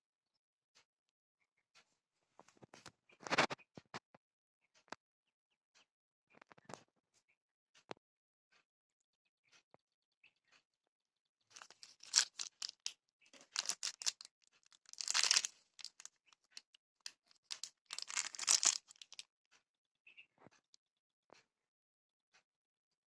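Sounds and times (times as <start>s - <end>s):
crinkling and rustling: 11.6s - 19.2s
small clicks: 11.6s - 19.2s.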